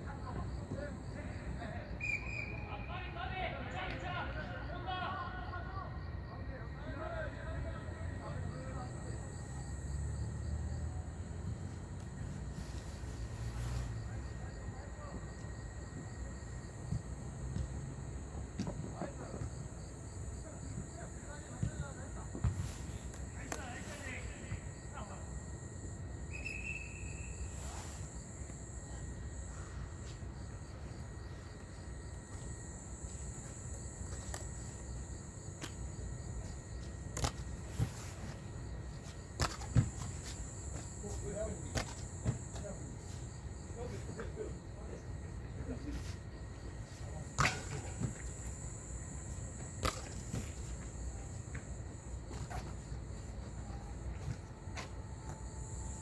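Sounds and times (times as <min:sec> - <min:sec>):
insects chirring: 0:00.0 - 0:56.0
football kicks: 0:21.5 - 0:24.6, 0:39.3 - 0:42.8, 0:47.3 - 0:48.3, 0:49.6 - 0:50.9.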